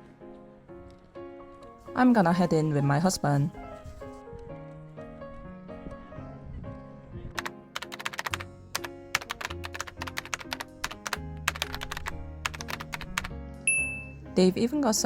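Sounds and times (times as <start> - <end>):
sharp typing clicks: 7.4 - 13.3.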